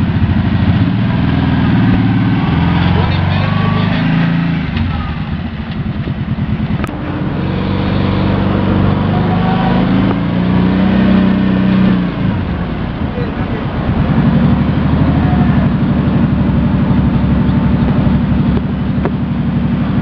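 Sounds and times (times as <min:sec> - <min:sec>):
atv engine revving: 0:00.0 - 0:20.0.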